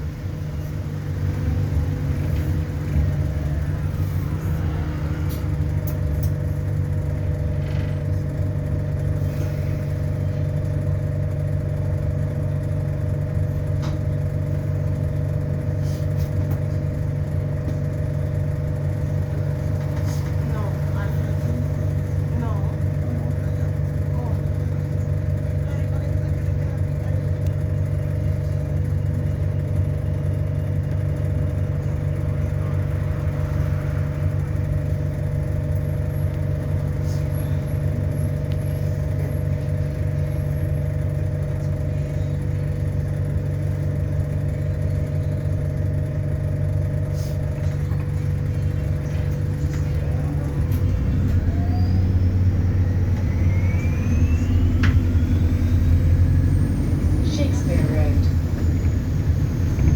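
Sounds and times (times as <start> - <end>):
bus engine drone: 0.0 - 59.9
rising motor whine: 49.2 - 59.9.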